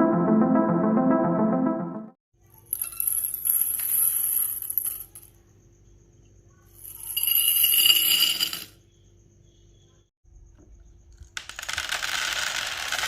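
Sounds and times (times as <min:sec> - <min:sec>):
balls rolling down wooden track: 0:11.1 - 0:13.0.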